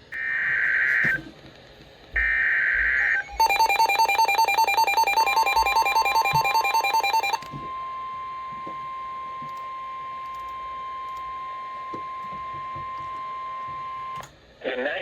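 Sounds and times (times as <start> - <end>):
steady single-pitch alert tone: 3.3 - 12.2.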